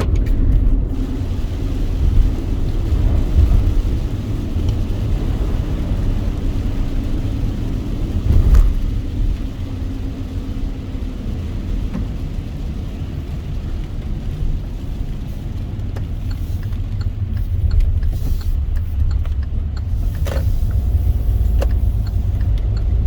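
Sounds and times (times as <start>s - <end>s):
tyres on wet road: 0.0s - 23.0s
thump: 8.3s - 8.8s.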